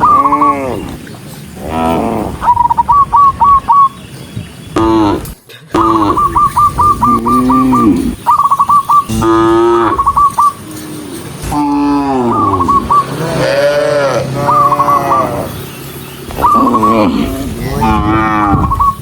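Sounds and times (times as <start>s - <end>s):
cattle mooing: 7.0s - 8.2s, 9.1s - 15.7s, 16.4s - 18.9s.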